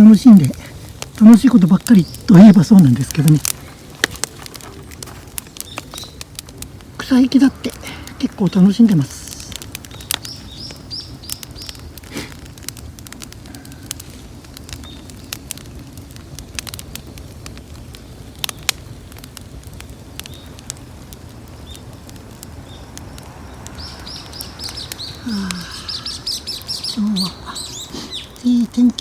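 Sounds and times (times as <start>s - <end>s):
bonfire crackling and popping: 0.0s - 29.0s
bird chirping: 1.2s - 3.5s, 4.1s - 6.2s, 7.0s - 12.0s, 21.5s - 29.0s.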